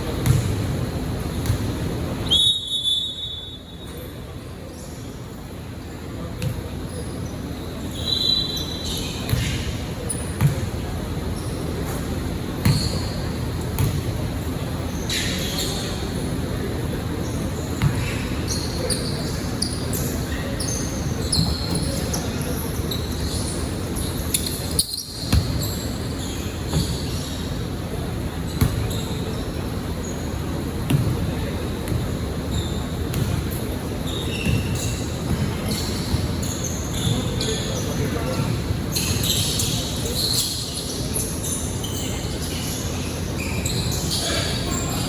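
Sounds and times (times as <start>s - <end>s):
murmur of players' voices: 0.0s - 45.0s
sneaker squeaks: 0.0s - 45.0s
basketball dribbling thuds: 0.1s - 1.9s, 10.4s - 10.8s, 13.7s - 14.2s, 28.6s - 29.0s, 30.8s - 32.1s, 33.0s - 33.6s, 34.4s - 36.3s.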